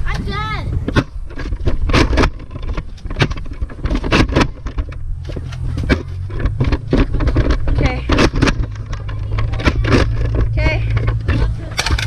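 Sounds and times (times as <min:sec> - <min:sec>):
handling knocks and rustles: 0:00.0 - 0:12.0
wind buffeting microphone: 0:00.0 - 0:12.0.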